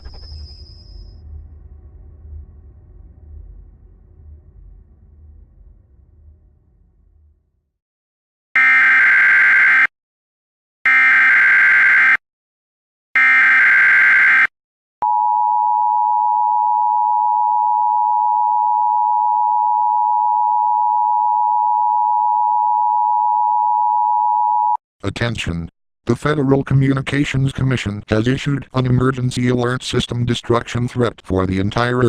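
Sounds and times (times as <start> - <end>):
digital data tone bursts: 0.0 - 1.2.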